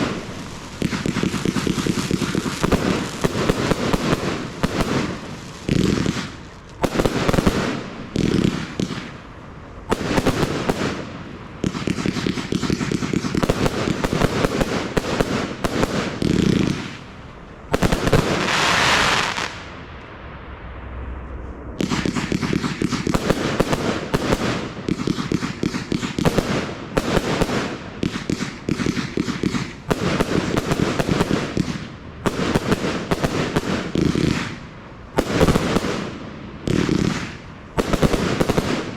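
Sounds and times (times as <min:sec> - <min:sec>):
firework cracks and bangs: 0:00.0 - 0:38.9
firework hissing rush: 0:17.8 - 0:25.0.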